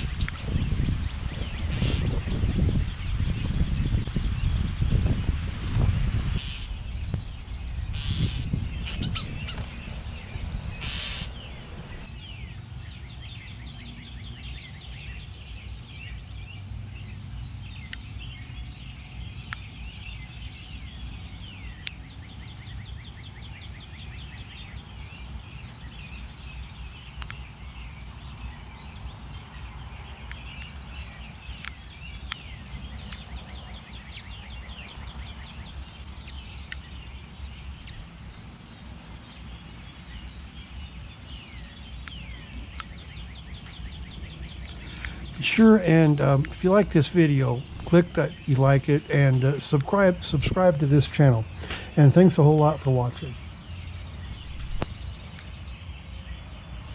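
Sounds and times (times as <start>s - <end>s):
gusty rustling: 0.0s - 12.6s, 53.9s - 55.1s
low rumble of wind: 0.0s - 56.9s
small birds chirping: 0.0s - 56.9s
short high bird call: 7.9s - 9.7s, 10.8s - 11.5s.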